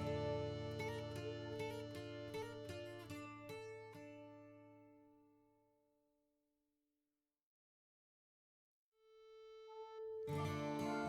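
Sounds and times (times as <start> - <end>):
plucked string notes: 0.0 - 3.6, 10.0 - 11.0.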